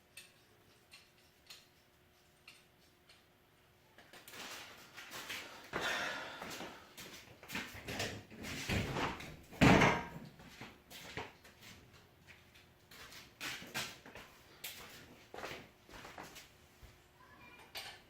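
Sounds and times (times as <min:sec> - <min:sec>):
tools knocking and clunking: 0:07.8 - 0:10.3.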